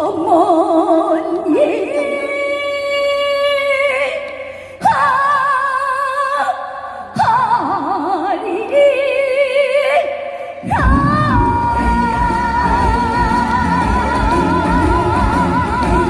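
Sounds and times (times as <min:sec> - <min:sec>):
woman singing with vibrato: 0:00.0 - 0:16.0
band playing: 0:10.8 - 0:16.0.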